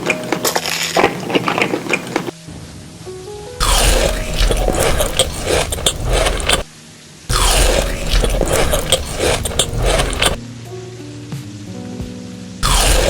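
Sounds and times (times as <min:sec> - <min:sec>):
crunchy food chewing: 0:00.0 - 0:02.4, 0:03.6 - 0:06.7, 0:07.3 - 0:10.4, 0:12.6 - 0:13.0
soft background music: 0:00.0 - 0:13.0.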